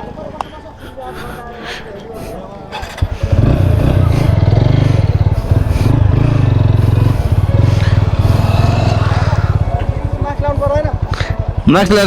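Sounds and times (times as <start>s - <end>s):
motorcycle engine running: 3.0s - 12.0s.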